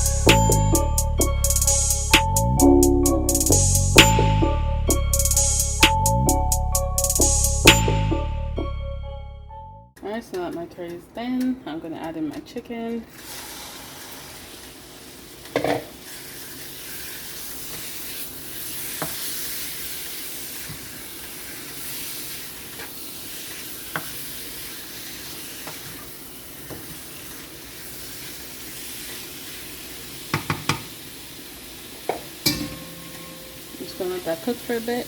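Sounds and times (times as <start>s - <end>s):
chicken sizzling in oil: 13.1s - 35.0s
knocks on pot: 30.3s - 30.9s
utensil clinking against pot: 32.4s - 33.5s.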